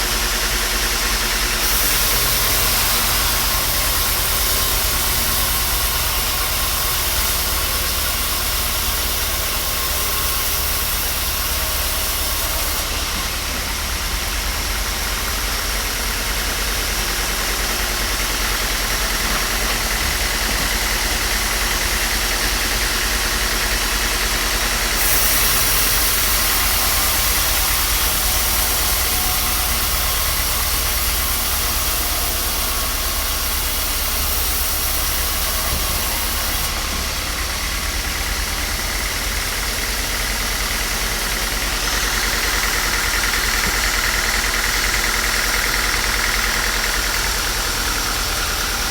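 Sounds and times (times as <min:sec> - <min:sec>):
machine motor droning: 0:01.2 - 0:48.9.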